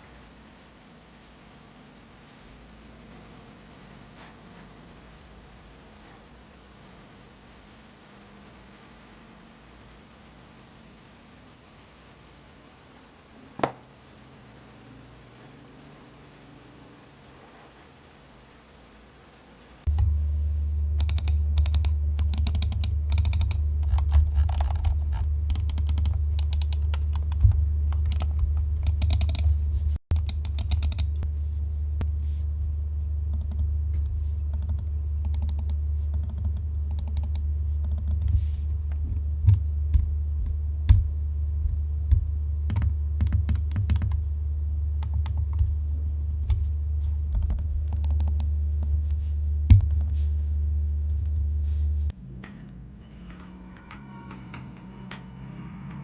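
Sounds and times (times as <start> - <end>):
steady low hum: 14.1 - 56.0.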